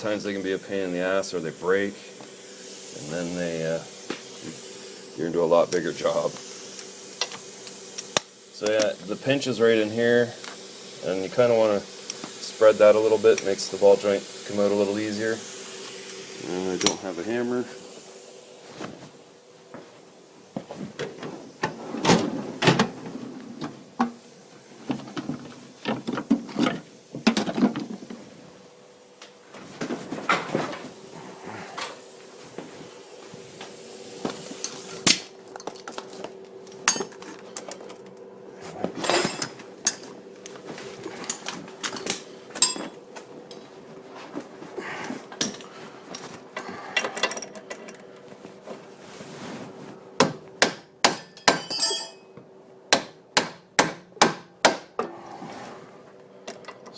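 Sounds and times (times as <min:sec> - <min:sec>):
metal tools clinking: 0:36.8 - 0:38.1, 0:39.0 - 0:40.6, 0:41.2 - 0:43.0, 0:47.0 - 0:48.0, 0:51.3 - 0:52.4.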